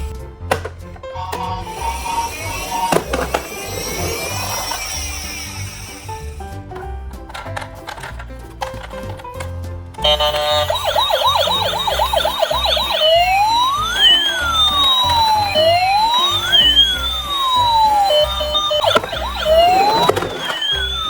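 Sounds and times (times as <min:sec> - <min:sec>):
background music with bass: 0:00.0 - 0:21.0
siren yelping: 0:01.2 - 0:06.0, 0:10.0 - 0:21.0
siren wailing: 0:01.2 - 0:06.1, 0:10.0 - 0:21.0.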